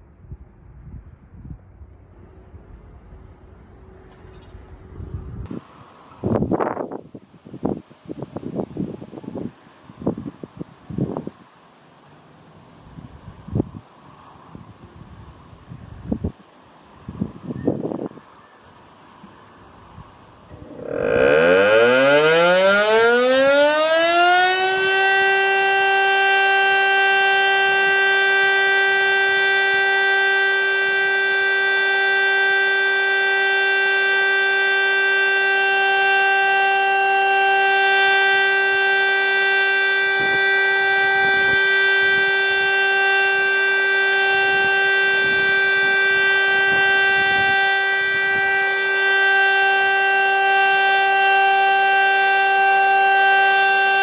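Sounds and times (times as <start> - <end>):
motor siren steady tone: 20.4 - 54.0.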